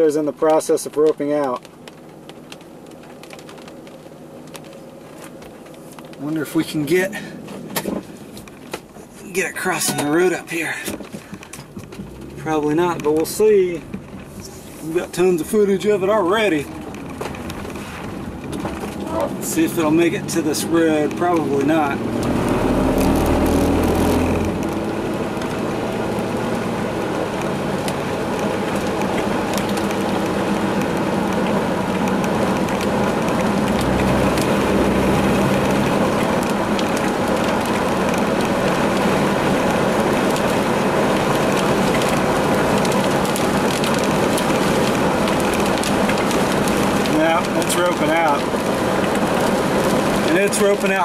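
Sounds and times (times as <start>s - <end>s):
rain ticking on glass: 0.0s - 51.0s
vehicle interior noise: 0.0s - 51.0s.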